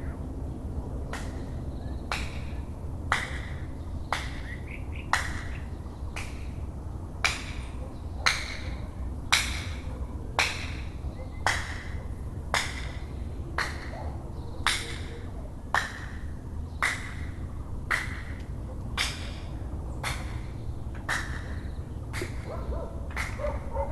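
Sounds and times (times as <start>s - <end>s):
person clapping hands: 23.1s - 23.4s.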